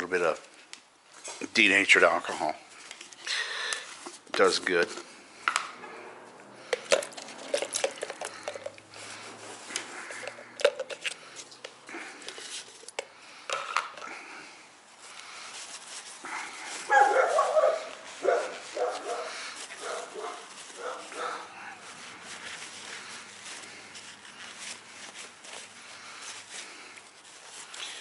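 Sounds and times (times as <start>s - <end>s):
small objects clicking and tapping: 6.7s - 8.8s, 9.7s - 11.8s
dog barking: 16.9s - 21.5s.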